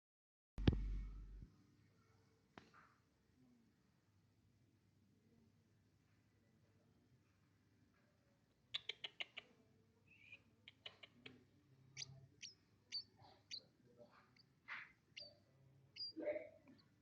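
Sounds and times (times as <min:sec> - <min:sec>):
sparrow chirping: 0:08.8 - 0:09.5, 0:10.1 - 0:17.0.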